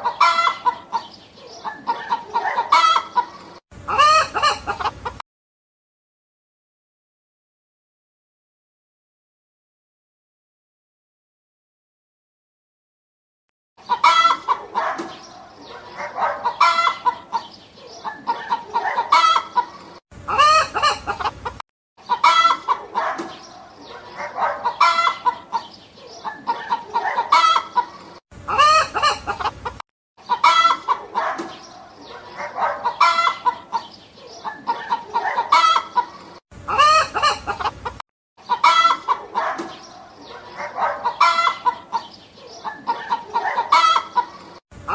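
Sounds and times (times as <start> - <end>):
chickens clucking: 0.0 - 5.2, 13.8 - 44.9
rooster crowing: 3.9 - 4.9.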